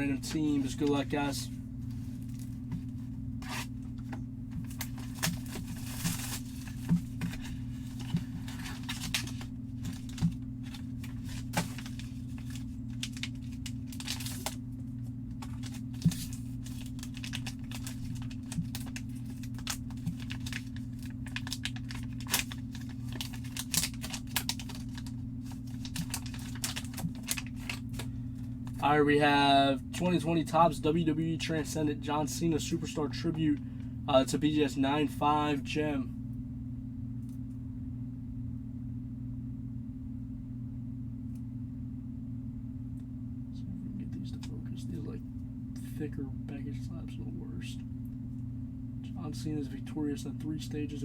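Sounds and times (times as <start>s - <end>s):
steady low hum: 0.0s - 51.0s
packaging tearing and crinkling: 4.6s - 14.6s, 15.4s - 28.1s.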